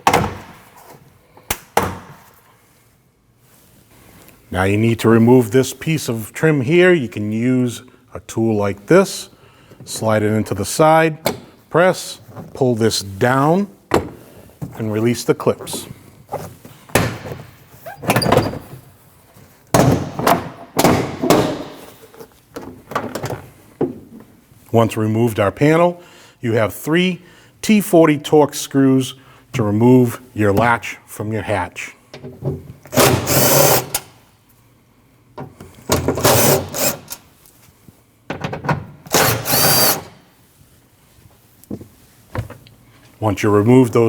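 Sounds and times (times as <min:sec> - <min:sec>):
power driver whirring: 0:39.1 - 0:40.1.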